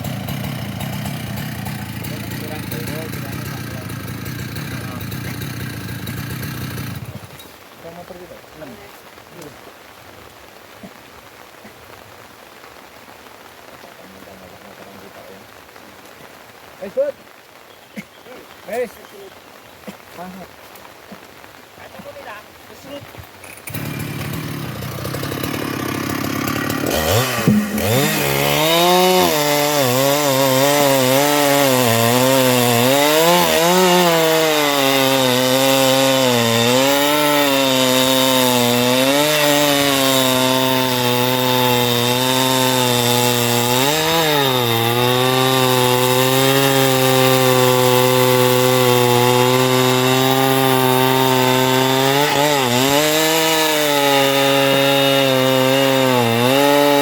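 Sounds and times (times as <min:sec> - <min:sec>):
chainsaw cutting wood: 0:00.0 - 0:07.5, 0:23.4 - 0:57.0.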